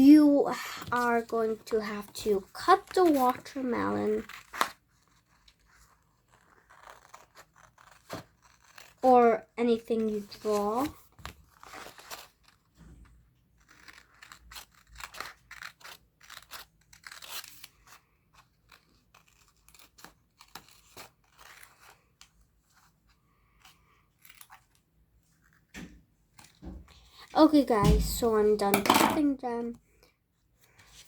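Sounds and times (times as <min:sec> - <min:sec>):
scissors cutting paper: 0:00.8 - 0:12.7, 0:13.5 - 0:24.8.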